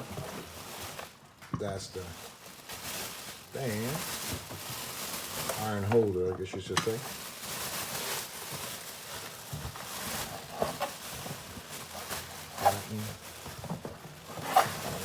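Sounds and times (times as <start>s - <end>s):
packaging rustling and crinkling: 0.0s - 15.0s.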